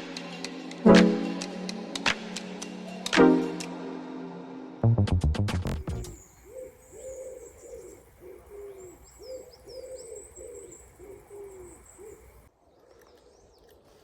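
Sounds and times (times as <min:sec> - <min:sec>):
pigeon cooing: 0:05.8 - 0:12.5
small bird chirping: 0:05.8 - 0:13.6.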